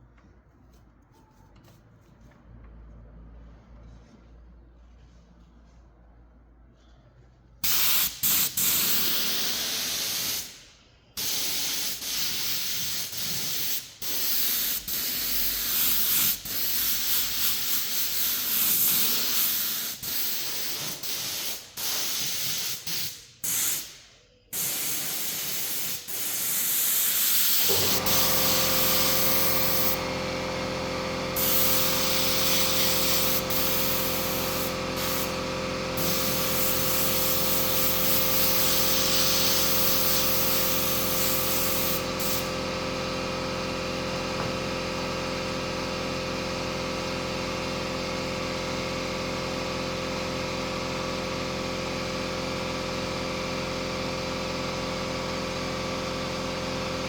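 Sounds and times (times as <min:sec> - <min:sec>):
spray hissing in bursts: 0:07.6 - 0:10.6, 0:11.2 - 0:24.0, 0:24.6 - 0:30.0, 0:31.4 - 0:35.4, 0:36.0 - 0:42.5.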